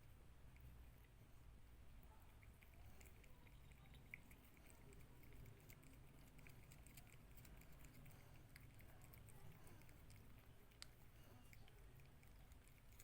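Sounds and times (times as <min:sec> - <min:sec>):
cat chewing clicks: 0:02.3 - 0:13.0.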